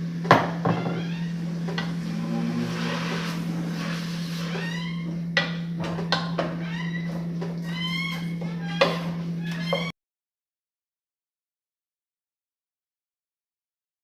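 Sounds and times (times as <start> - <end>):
steady low hum: 0.0 - 9.7.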